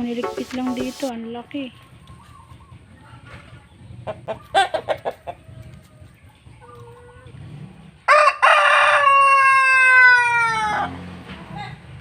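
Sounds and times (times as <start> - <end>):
rooster crowing: 8.1 - 10.8.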